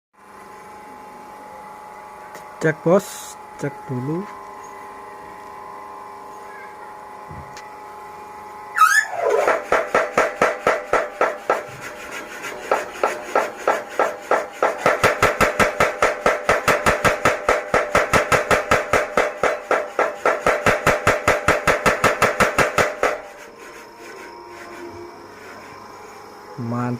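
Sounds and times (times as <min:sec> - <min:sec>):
power hammer pounding metal: 0:09.3 - 0:11.8, 0:12.6 - 0:23.3.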